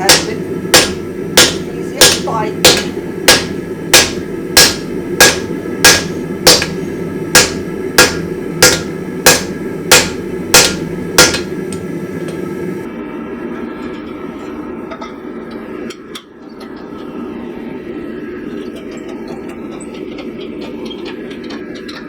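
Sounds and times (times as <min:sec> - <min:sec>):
hammer striking steel on anvil: 0:00.0 - 0:12.4
steady background noise: 0:00.0 - 0:22.0.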